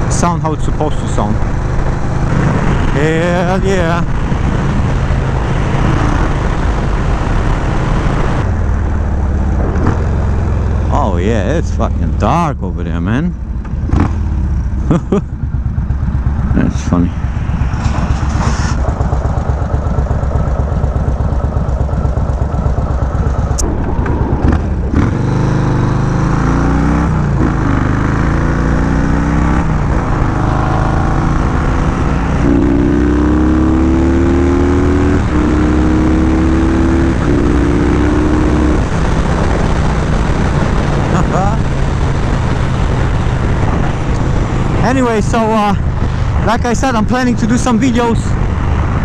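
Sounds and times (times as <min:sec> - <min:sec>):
motorcycle engine accelerating: 0:00.0 - 0:49.0
wind rush: 0:14.6 - 0:21.9, 0:23.2 - 0:28.0.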